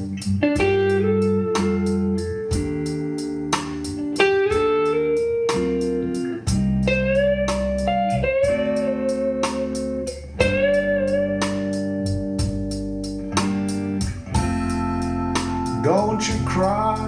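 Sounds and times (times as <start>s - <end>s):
slide guitar lead: 0.0s - 17.0s
steady drum beat: 0.0s - 17.0s
sustained chords: 12.8s - 17.0s.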